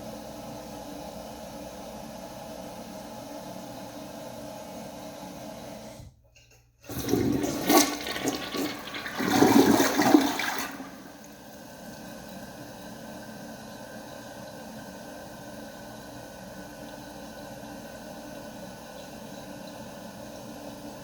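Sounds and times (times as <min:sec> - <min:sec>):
toilet flushing: 0:06.8 - 0:18.9.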